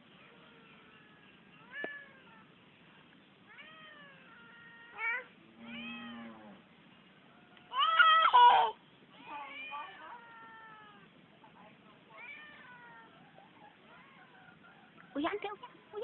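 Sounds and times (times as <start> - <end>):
cat meowing: 3.5 - 6.3, 9.2 - 11.1, 12.2 - 13.2.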